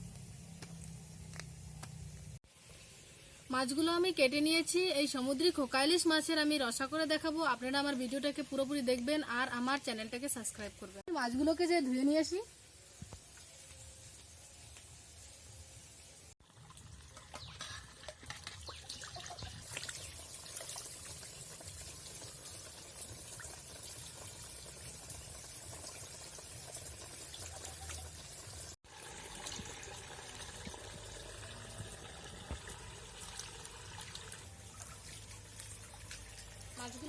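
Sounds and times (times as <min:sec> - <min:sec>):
water pouring and splashing: 0:16.4 - 0:37.0.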